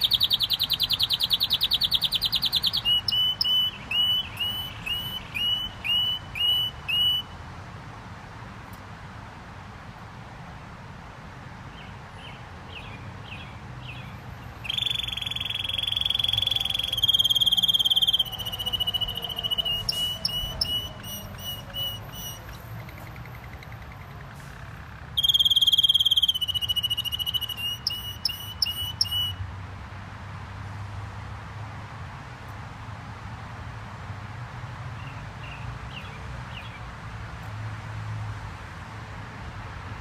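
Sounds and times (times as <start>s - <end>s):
canary singing trills: 0.0s - 7.4s, 11.8s - 29.4s.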